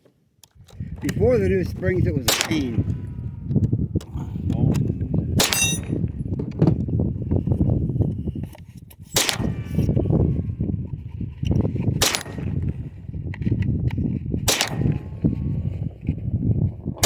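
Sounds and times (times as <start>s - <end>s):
wind rumbling on microphone: 0.4s - 17.0s
pistol shots: 2.2s - 2.9s, 5.4s - 6.0s, 9.2s - 9.8s, 12.0s - 12.6s, 14.5s - 15.2s.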